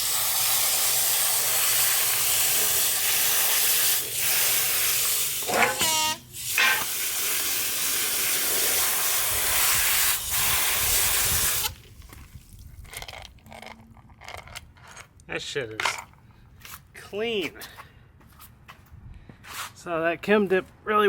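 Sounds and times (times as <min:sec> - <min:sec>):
compressed air hissing from blow gun: 0:00.0 - 0:11.8.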